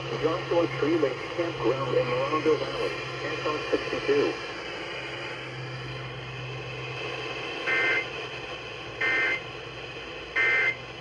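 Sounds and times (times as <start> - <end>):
radio hiss: 0.0 - 6.1.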